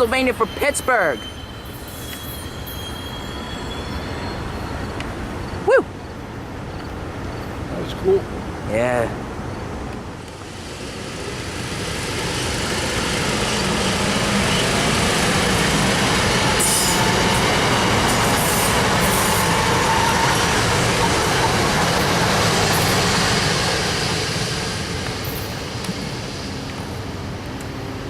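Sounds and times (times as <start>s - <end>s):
train wheels rumbling on rails: 10.2s - 28.0s.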